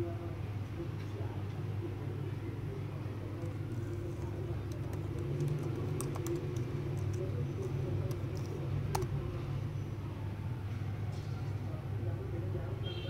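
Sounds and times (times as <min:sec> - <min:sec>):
laptop keys clicking: 0:03.5 - 0:09.1.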